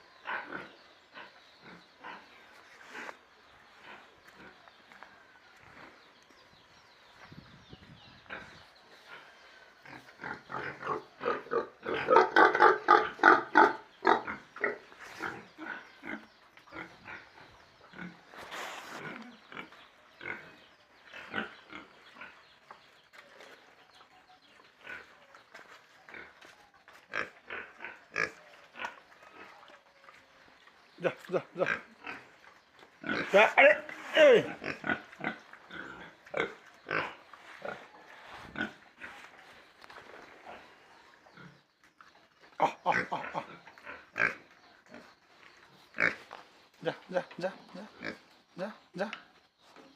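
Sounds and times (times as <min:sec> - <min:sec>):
pigs grunting and squealing: 0:00.2 - 0:04.6, 0:08.2 - 0:18.3, 0:19.0 - 0:22.4, 0:26.1 - 0:39.3, 0:42.4 - 0:45.2, 0:45.9 - 0:49.3
noisy rustle: 0:18.4 - 0:19.1.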